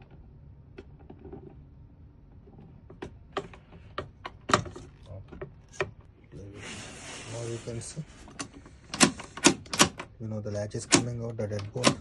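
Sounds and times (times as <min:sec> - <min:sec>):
door lock parts clicking: 0:08.4 - 0:12.0.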